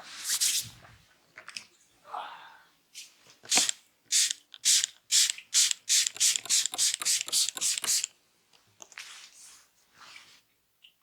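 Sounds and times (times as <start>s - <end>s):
hands rubbing through hair: 6.0s - 8.1s.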